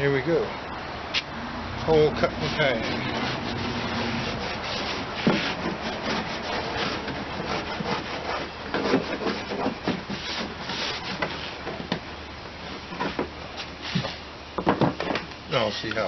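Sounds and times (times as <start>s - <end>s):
rubbing and scraping on hard plastic: 2.2s - 15.2s
sharp knocks on plastic: 14.6s - 15.3s.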